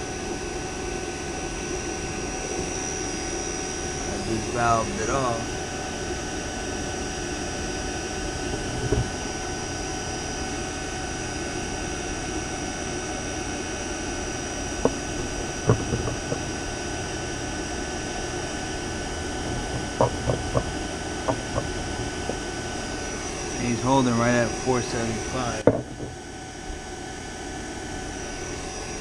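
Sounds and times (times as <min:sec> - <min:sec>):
machinery drone: 0:00.0 - 0:26.4
sharp knocks: 0:08.5 - 0:09.1, 0:14.8 - 0:16.5, 0:19.4 - 0:22.4, 0:25.6 - 0:26.2.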